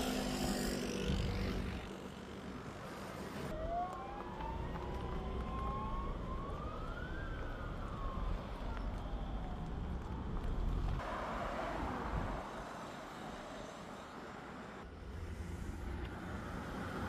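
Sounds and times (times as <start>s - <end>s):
low rumble of wind or traffic: 0.0s - 17.0s
sirens wailing: 3.5s - 11.1s.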